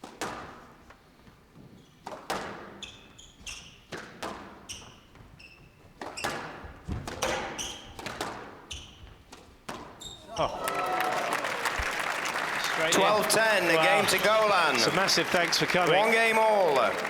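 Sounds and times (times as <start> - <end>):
squash ball hitting rackets and walls: 0.0 - 10.4
shoes squeaking on court floor: 0.1 - 10.6.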